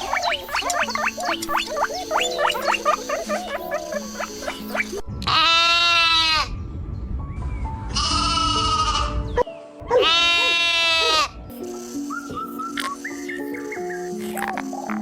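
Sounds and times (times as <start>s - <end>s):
soft background music: 0.0s - 15.0s
livestock bleating: 5.2s - 6.5s, 8.0s - 9.2s, 9.9s - 11.4s.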